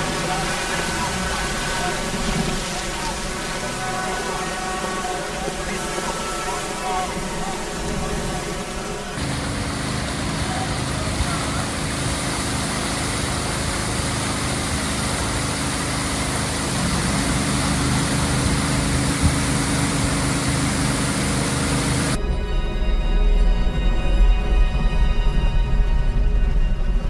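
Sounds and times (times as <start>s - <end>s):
engine running: 0.0s - 5.9s, 7.7s - 22.2s
constant hiss: 0.0s - 22.2s.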